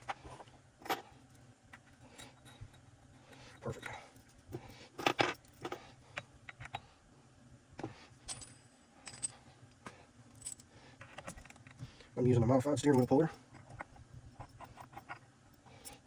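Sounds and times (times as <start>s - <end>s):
small metallic clinks and taps: 1.7s - 6.8s, 8.3s - 11.9s, 12.8s - 16.0s.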